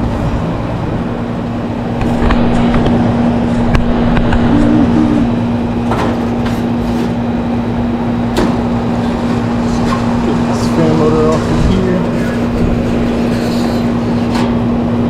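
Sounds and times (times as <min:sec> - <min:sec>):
machine drone: 0:08.4 - 0:14.3.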